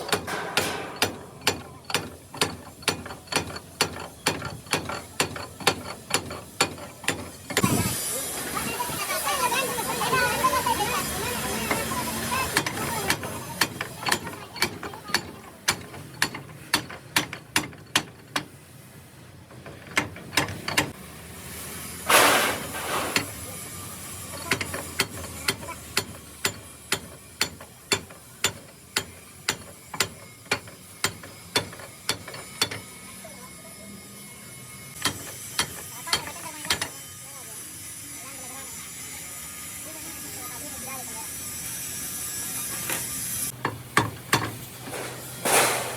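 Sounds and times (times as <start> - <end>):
brief hiss: 22.0 - 23.4.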